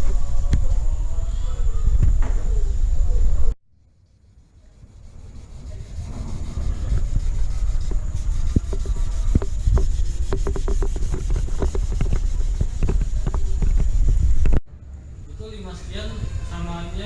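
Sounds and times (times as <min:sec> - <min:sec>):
rubbing and scraping on a part: 0:04.1 - 0:14.6.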